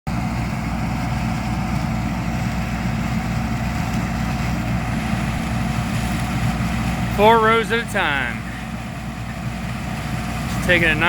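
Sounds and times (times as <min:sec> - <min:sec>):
combine harvester engine drone: 0:00.1 - 0:11.0
harvesting machinery noise: 0:00.1 - 0:11.0.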